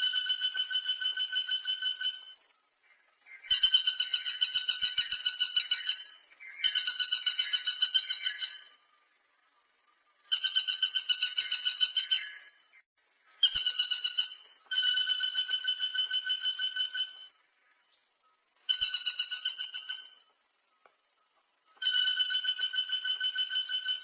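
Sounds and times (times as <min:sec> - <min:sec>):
woodpecker rattling call: 0:00.0 - 0:08.9, 0:10.2 - 0:18.0, 0:18.6 - 0:24.0.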